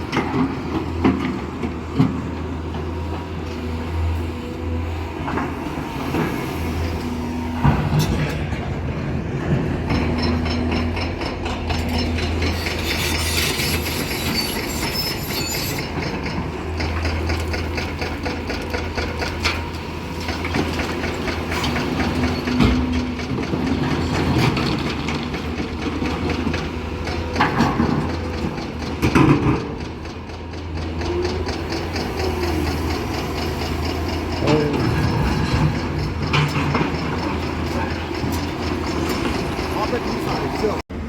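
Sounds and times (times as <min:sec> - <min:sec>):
excavator diesel engine: 0:00.0 - 0:41.0
high metallic squealing: 0:11.8 - 0:16.2.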